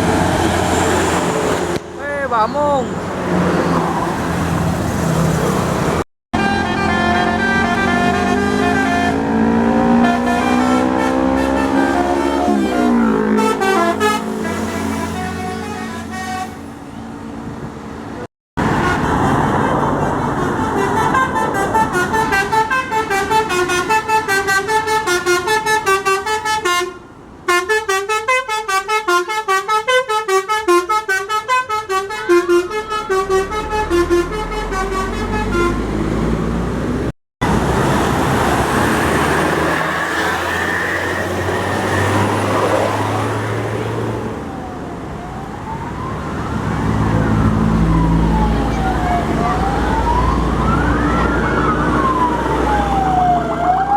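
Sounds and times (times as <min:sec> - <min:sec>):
engine and traffic noise: 0:00.0 - 0:53.9
musical bus horns: 0:06.3 - 0:17.1, 0:18.6 - 0:36.3.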